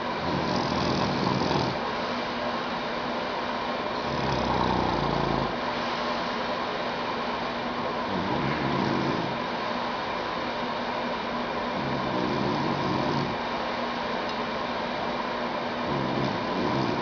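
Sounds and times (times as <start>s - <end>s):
man snoring: 0.2s - 1.8s, 4.0s - 5.6s, 8.1s - 9.4s, 11.7s - 13.4s, 15.8s - 17.0s.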